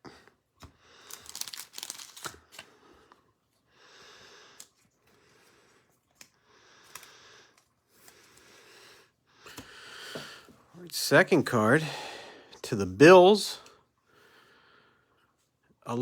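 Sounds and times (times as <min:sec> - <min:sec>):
plastic crinkling and rustling: 0:01.0 - 0:02.7.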